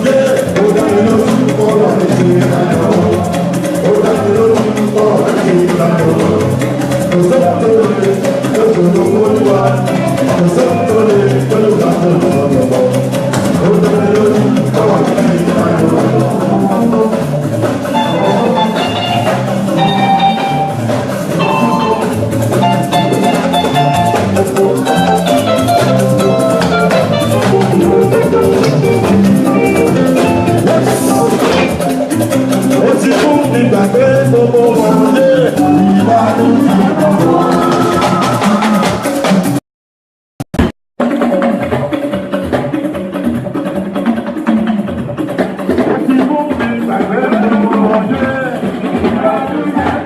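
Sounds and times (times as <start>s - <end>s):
drums and percussion beat: 0.0s - 39.6s, 40.5s - 50.0s
melodic instrument bright runs: 17.9s - 24.3s.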